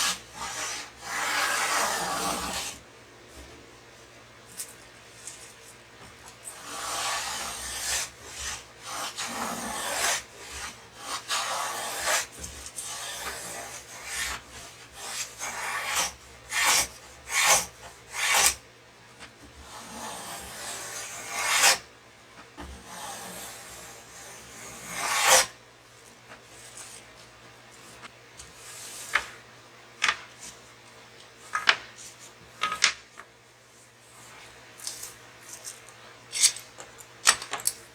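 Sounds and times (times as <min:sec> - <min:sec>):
rasping scraping on wood: 0:00.0 - 0:02.8, 0:06.5 - 0:18.6, 0:19.6 - 0:21.8, 0:22.8 - 0:25.5.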